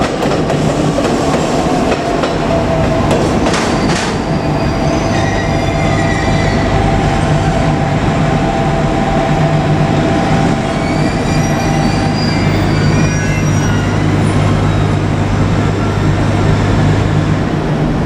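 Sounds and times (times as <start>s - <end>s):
train rolling on rails: 0.0s - 18.0s
wheel squeal: 3.7s - 6.8s, 10.6s - 15.0s.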